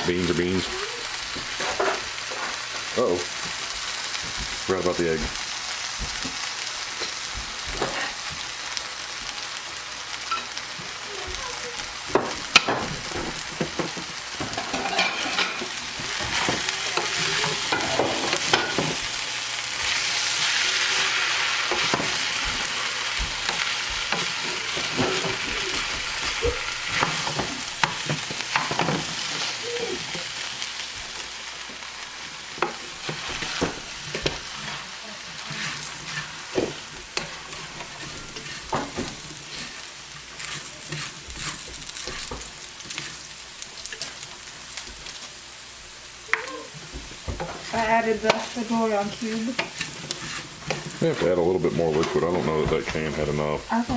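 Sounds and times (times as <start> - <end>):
rice and beans sizzling in a pan: 0.0 - 53.9
spoon scraping and knocking a pan: 1.3 - 2.6, 3.4 - 8.5, 12.1 - 19.2, 21.3 - 30.3, 32.5 - 45.1, 46.7 - 53.9.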